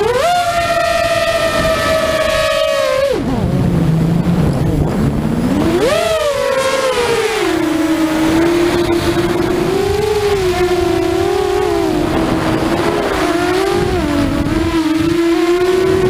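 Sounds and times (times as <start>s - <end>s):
quadcopter motors whining: 0.0s - 16.0s.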